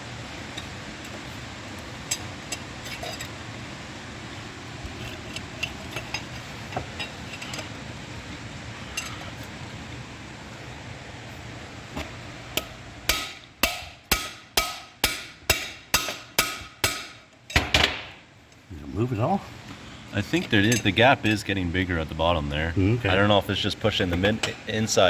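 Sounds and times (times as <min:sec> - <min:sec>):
hammer striking metal bar: 0:12.6 - 0:18.1.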